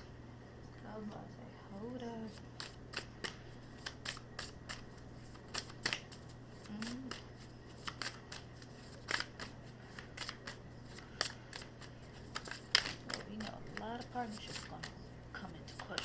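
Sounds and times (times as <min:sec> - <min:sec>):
cards being shuffled: 0:02.2 - 0:16.0.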